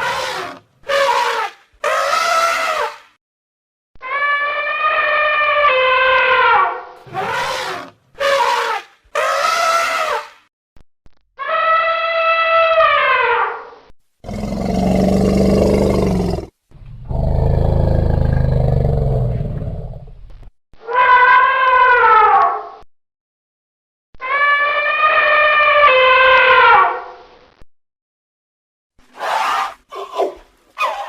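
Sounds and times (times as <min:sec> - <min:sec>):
elephant trumpeting: 0:00.0 - 0:03.0, 0:04.1 - 0:10.3, 0:29.1 - 0:31.0
elephant low rough roars: 0:14.2 - 0:20.1.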